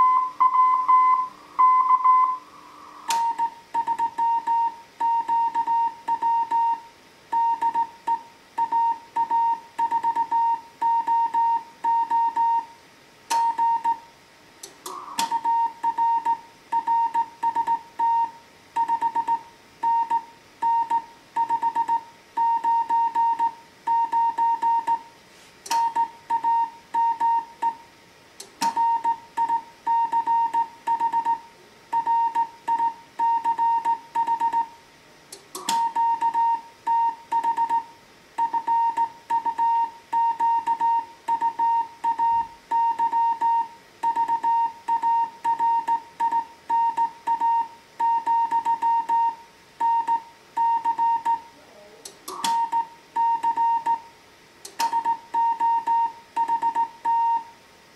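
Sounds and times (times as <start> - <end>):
morse code tone: 0.0 - 6.8, 35.7 - 51.5, 54.8 - 57.5
sharp clicks: 13.3 - 13.6, 14.6 - 15.5, 35.3 - 36.4, 52.0 - 52.8, 54.6 - 55.1.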